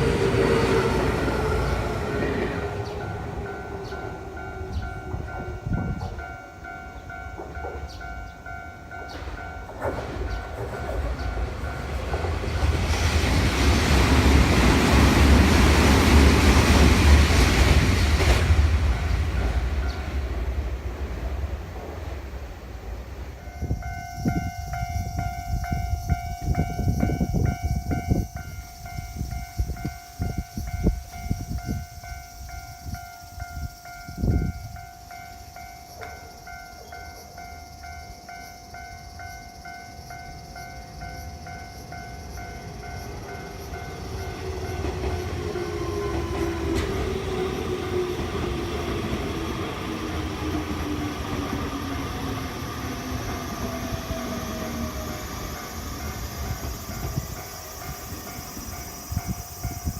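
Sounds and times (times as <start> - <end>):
train motor whine: 0.0 - 6.2, 42.6 - 59.9
railroad crossing bell ringing: 0.0 - 13.1, 13.8 - 20.7, 23.2 - 59.9
train wheels thumping over rail joints: 9.0 - 20.6, 44.2 - 51.7.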